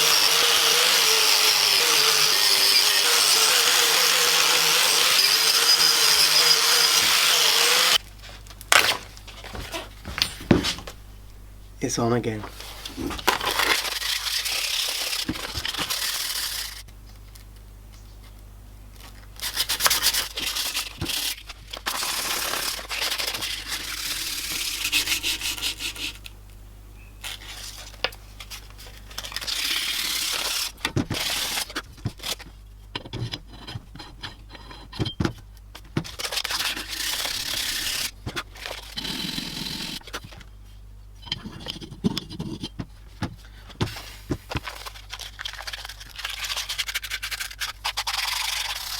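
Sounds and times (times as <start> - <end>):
steady low hum: 8.0 - 14.0, 20.2 - 30.8
hand scraping on metal: 21.9 - 26.4.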